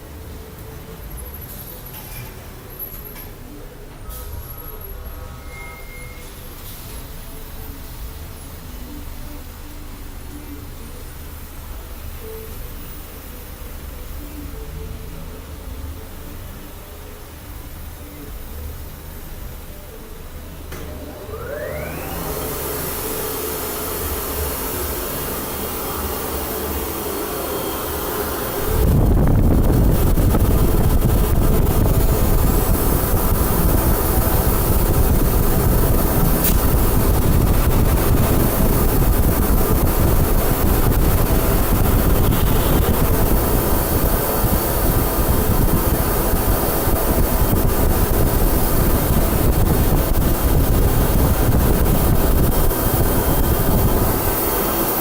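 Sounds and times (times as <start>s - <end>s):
industrial vacuum cleaner running: 20.7s - 55.0s.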